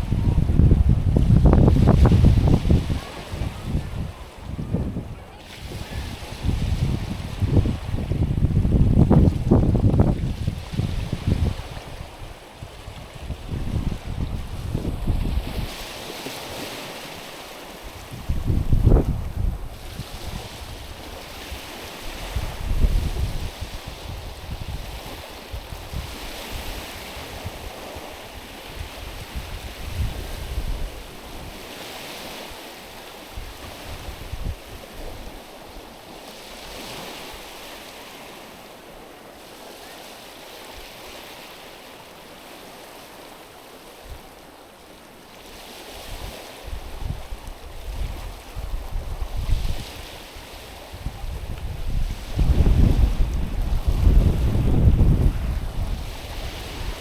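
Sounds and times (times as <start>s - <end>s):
wind gusts on microphone: 0.0s - 44.4s, 45.4s - 57.0s
waves washing over pebbles: 0.0s - 57.0s.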